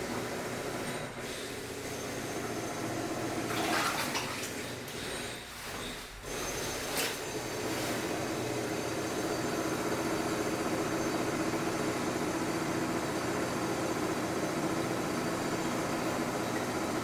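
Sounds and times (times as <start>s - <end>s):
construction machinery engine drone: 4.5s - 17.0s.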